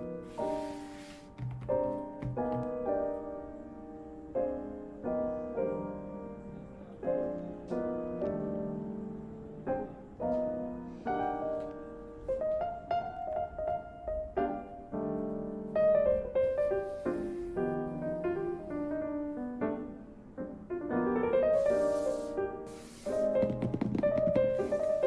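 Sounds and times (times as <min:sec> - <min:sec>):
piano music: 0:00.0 - 0:25.0.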